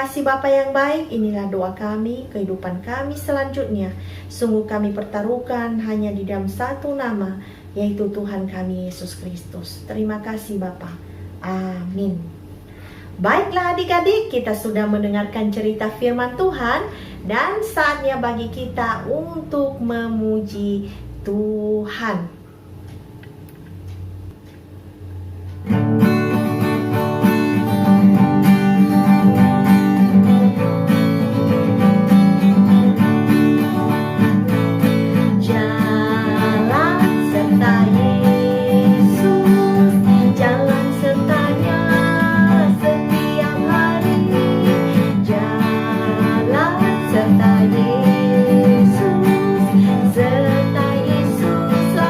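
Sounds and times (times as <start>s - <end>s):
strummed acoustic guitar: 25.6s - 52.0s
person singing: 35.0s - 52.0s.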